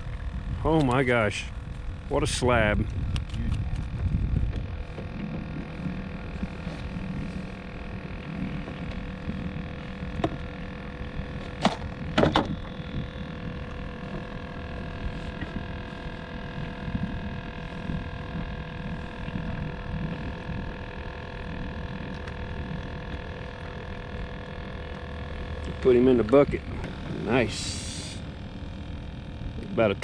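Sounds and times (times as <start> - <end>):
steady hum and low rumble: 0.0 - 30.0
sharp knocks on a boat: 10.2 - 10.4, 11.4 - 12.6.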